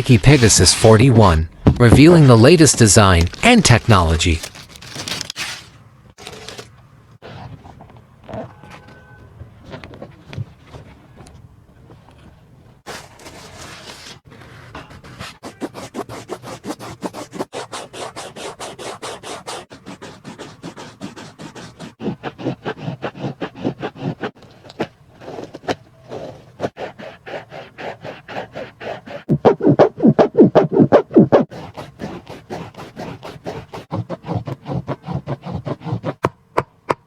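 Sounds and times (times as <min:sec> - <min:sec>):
rhythmic scratching and scraping: 0:00.0 - 0:04.5, 0:29.2 - 0:36.2.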